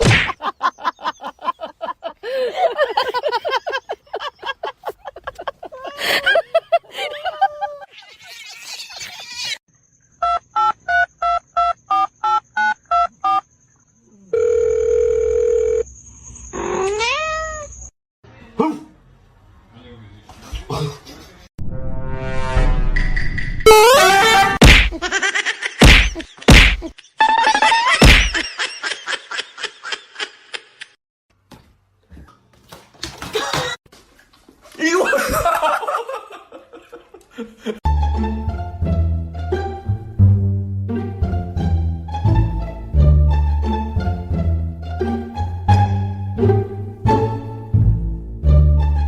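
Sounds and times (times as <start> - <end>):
person laughing: 0.3 - 9.6, 24.7 - 30.9, 34.9 - 37.8
loud thump: 24.6 - 25.0, 25.8 - 26.8, 28.0 - 28.4.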